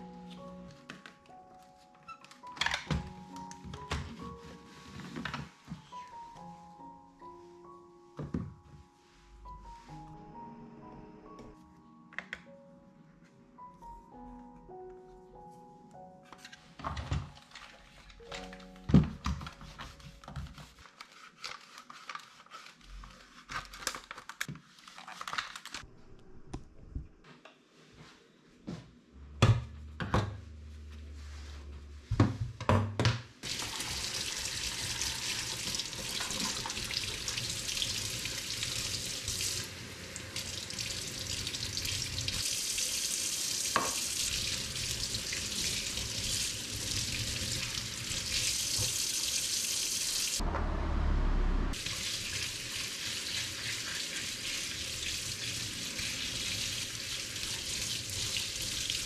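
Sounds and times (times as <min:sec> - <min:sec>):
tap water running into sink: 0:33.4 - 0:50.4, 0:51.8 - 0:59.0.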